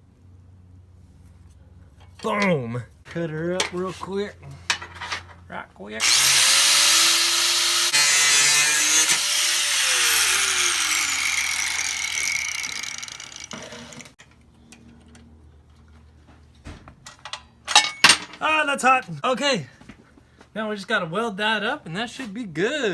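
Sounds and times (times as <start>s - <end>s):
grinder cutting metal rod: 6.0s - 14.2s.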